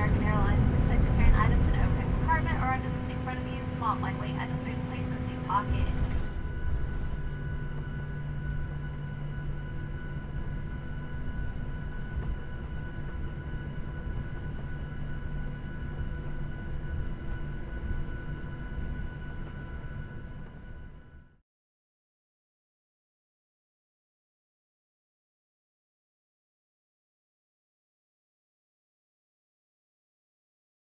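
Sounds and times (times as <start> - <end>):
jet engines whining: 0.0 - 6.3
low hum: 0.0 - 6.3.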